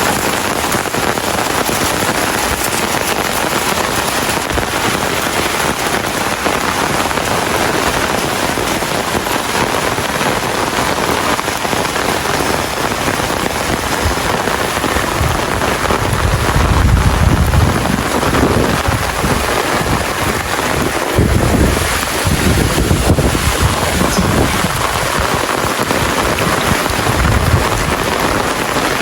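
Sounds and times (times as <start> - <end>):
steady rain falling: 0.0 - 29.0
low rumbling: 21.1 - 29.0.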